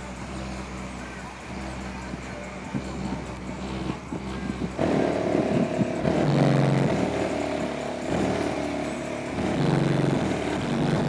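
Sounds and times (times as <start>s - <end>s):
bass-heavy music through subwoofers: 0.0s - 11.0s.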